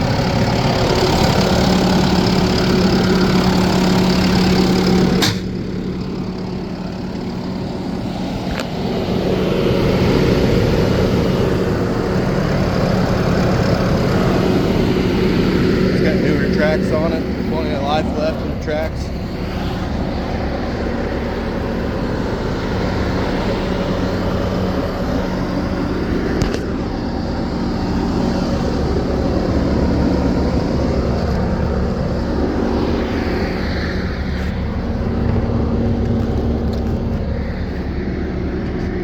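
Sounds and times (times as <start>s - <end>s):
diesel engine running: 0.0s - 39.0s.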